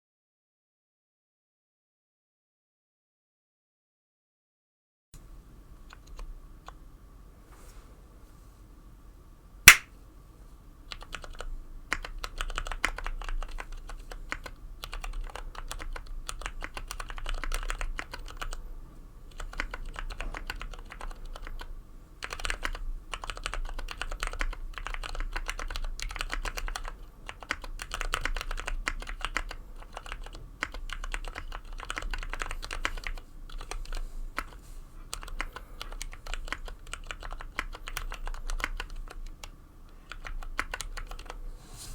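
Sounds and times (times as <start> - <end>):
sharp click: 9.7 - 9.9
mechanical keyboard typing: 10.9 - 18.6, 19.3 - 41.4.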